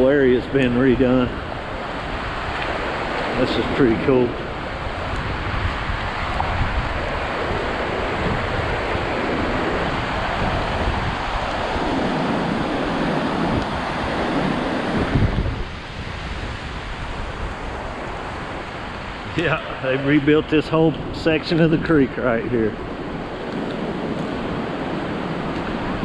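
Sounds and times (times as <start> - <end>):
creek water rushing: 0.0 - 26.0
wind buffeting microphone: 0.0 - 26.0.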